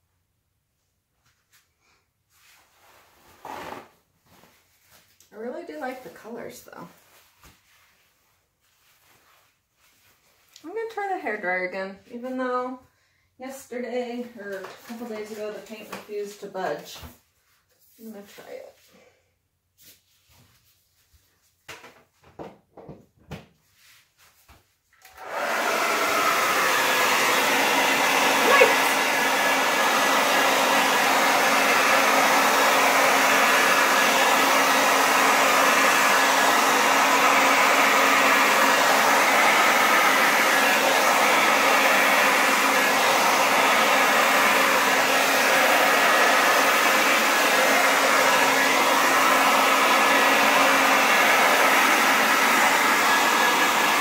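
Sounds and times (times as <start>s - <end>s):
hair dryer whirring: 3.4s - 3.9s, 25.0s - 54.0s.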